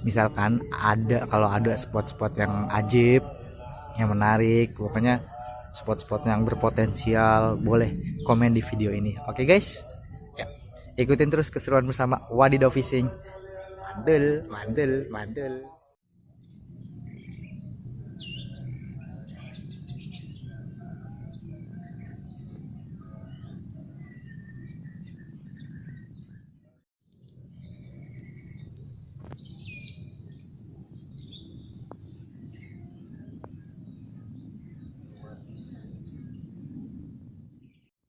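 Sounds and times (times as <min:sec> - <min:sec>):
insects buzzing: 0:00.0 - 0:15.6
bird chirps: 0:16.4 - 0:26.8, 0:27.5 - 0:36.8.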